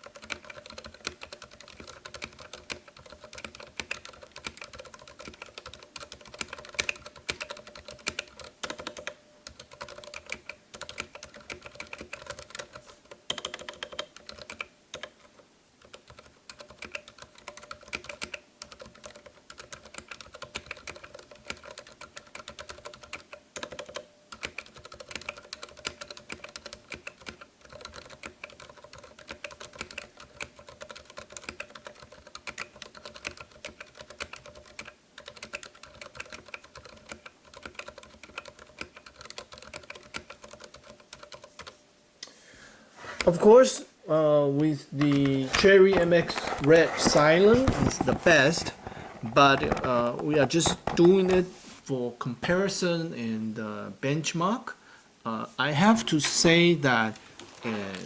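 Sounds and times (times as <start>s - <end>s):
fast typing on mechanical keyboard: 0.0s - 41.8s.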